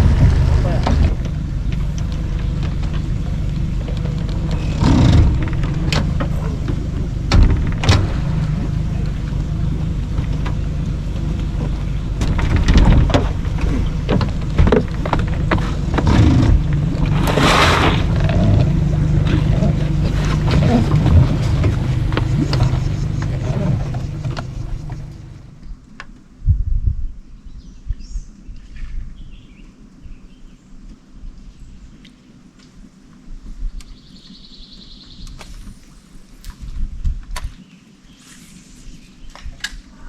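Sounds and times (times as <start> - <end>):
rush of noise: 0.0 - 25.5
boat motor running: 0.0 - 25.7
knocks and clicks of gear: 0.0 - 26.3, 36.4 - 37.6.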